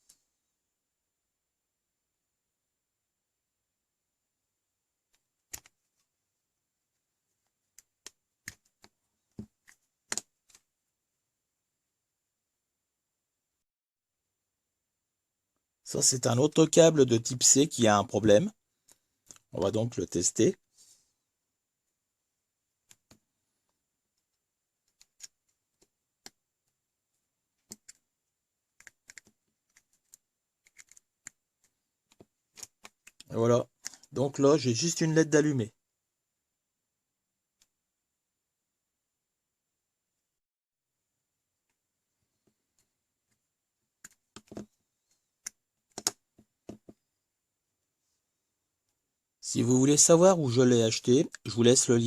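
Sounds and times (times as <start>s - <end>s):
cable plugs clicking into sockets: 5.5s - 5.8s.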